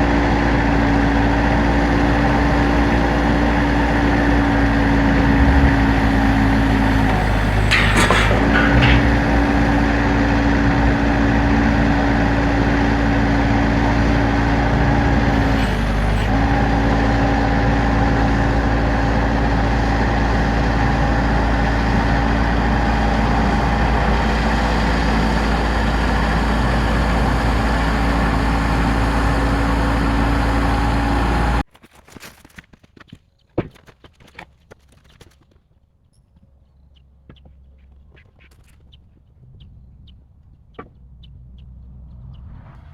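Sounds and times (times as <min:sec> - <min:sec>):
engine running steadily: 0:00.0 - 0:31.6.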